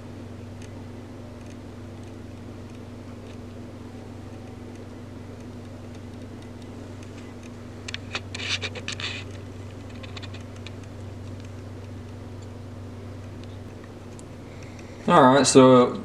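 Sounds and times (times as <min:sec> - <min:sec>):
steady low hum: 0:00.0 - 0:16.0
scratchy rustle: 0:08.0 - 0:10.8.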